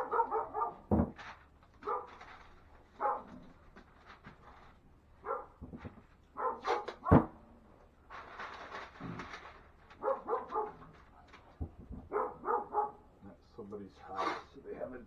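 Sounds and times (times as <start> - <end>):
dog barking: 0.0 - 1.1, 1.8 - 2.3, 2.9 - 3.5, 5.2 - 7.3, 10.0 - 11.0, 12.0 - 13.1.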